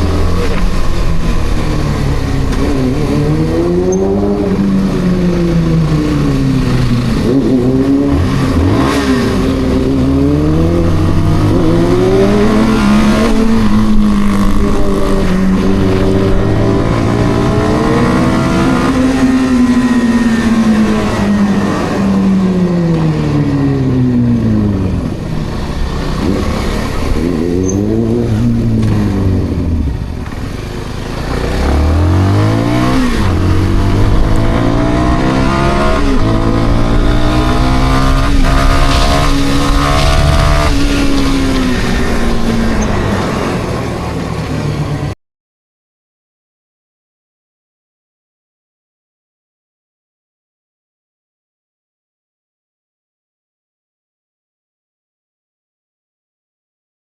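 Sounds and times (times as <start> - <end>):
motorcycle engine revving: 0.0 - 45.1.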